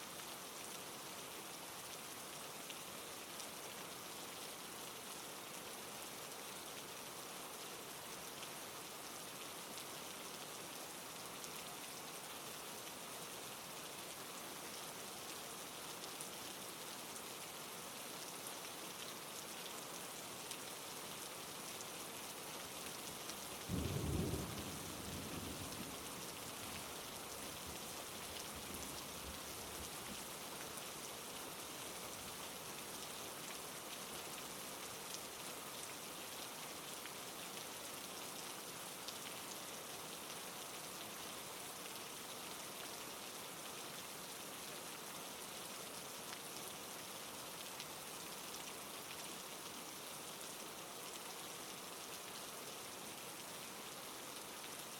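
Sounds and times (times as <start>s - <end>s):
steady rain falling: 0.0s - 54.9s
low rumble of thunder: 23.7s - 26.1s.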